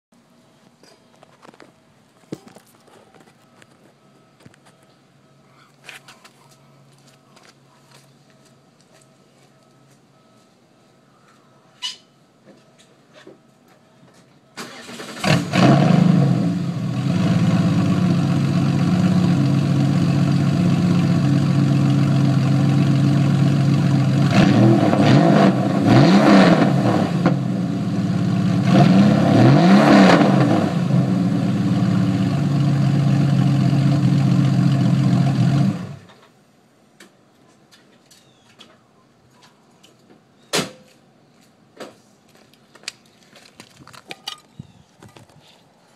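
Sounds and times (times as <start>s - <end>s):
car engine idling and revving: 14.8s - 36.2s.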